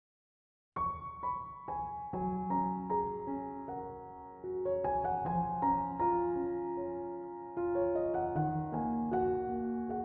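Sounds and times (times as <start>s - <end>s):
soft piano music: 0.8s - 10.0s.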